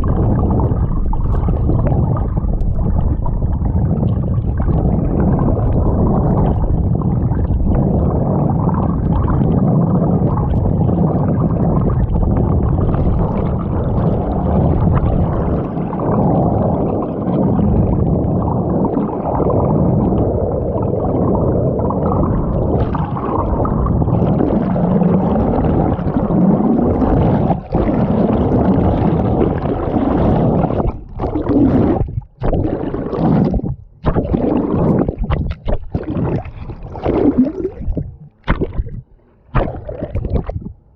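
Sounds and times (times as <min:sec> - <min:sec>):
underwater churning and gurgling: 0:00.0 - 0:40.9.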